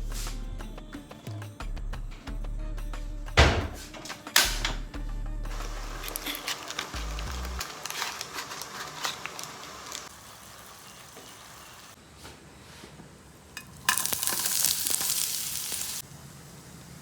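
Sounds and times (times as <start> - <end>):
food frying in hot oil: 5.5 - 12.0, 13.5 - 17.0.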